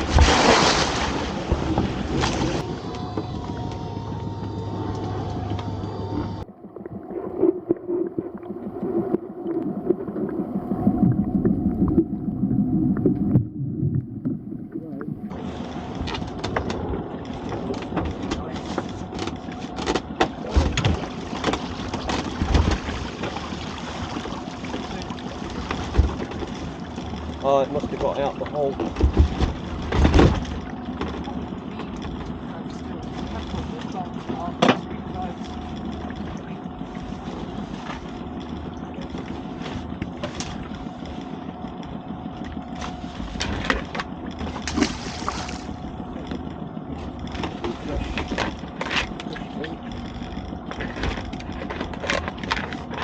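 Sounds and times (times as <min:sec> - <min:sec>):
outboard motor idling: 0:00.0 - 0:07.7, 0:14.4 - 0:53.0
water noise: 0:00.0 - 0:53.0
wind: 0:00.0 - 0:53.0
short knocks and low thumps: 0:27.8 - 0:30.7.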